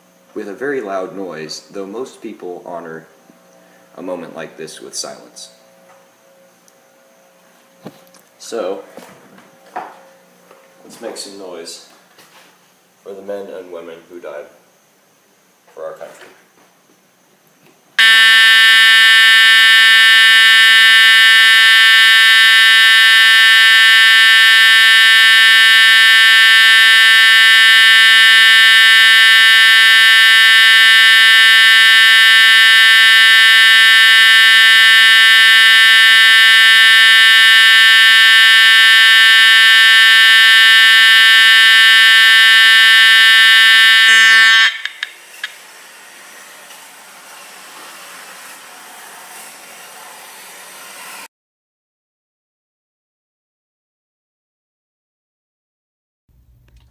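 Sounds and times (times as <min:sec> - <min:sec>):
fire alarm horn buzzing: 0:18.0 - 0:45.1.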